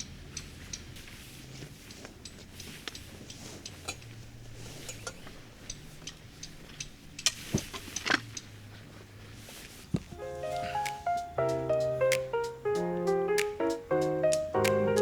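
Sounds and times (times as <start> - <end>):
sharp clicks and crackles: 0.0 - 8.5.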